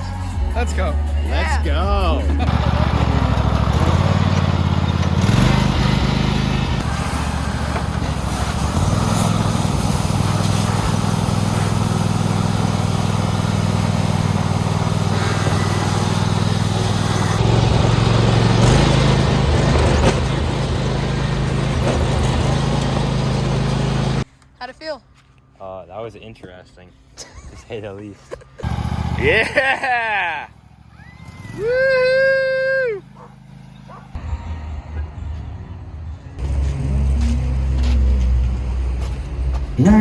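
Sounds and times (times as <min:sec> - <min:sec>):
held bass notes: 0:00.0 - 0:24.2.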